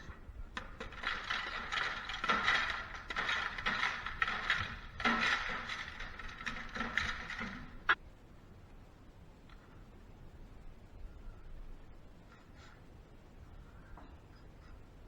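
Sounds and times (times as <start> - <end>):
metallic clicking and scraping: 0.0 - 8.0.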